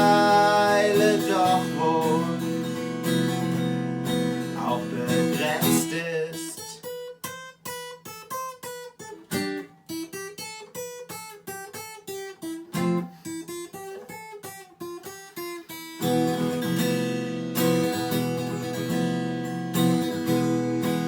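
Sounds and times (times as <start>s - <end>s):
acoustic guitar: 0.0s - 21.0s.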